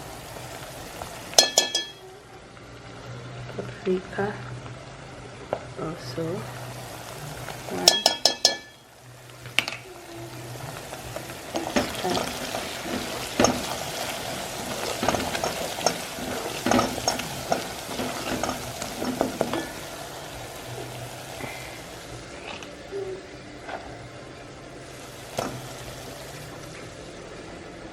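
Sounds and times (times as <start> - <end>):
food sizzling in oil: 0.0 - 22.9, 24.7 - 27.9
spoon knocking and scraping pot: 1.4 - 2.0, 7.8 - 8.8, 11.5 - 19.7.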